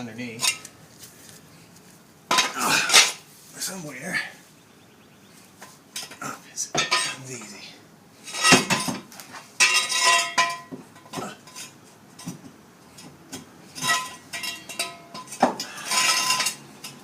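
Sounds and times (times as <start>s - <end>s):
metal jack stand clanking: 8.3s - 12.4s, 13.0s - 17.0s.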